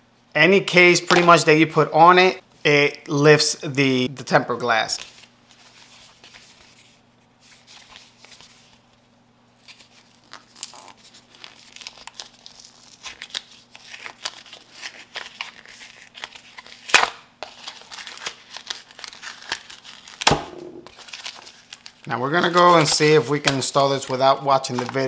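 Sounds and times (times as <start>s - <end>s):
crinkly plastic crackling: 20.9s - 25.0s.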